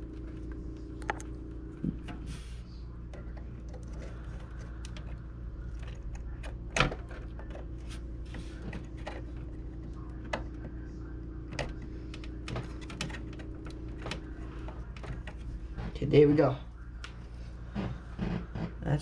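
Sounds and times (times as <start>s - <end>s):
steady low hum: 0.0s - 19.0s
computer parts clicking and knocking: 3.1s - 7.8s, 11.5s - 15.5s.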